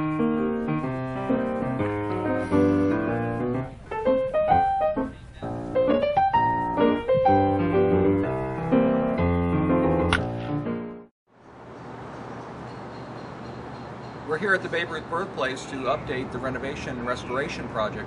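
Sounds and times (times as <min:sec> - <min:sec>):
piano music: 0:00.0 - 0:11.1.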